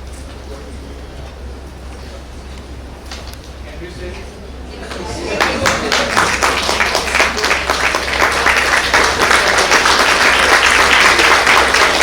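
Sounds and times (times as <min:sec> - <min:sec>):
audience applauding: 0:04.8 - 0:12.0.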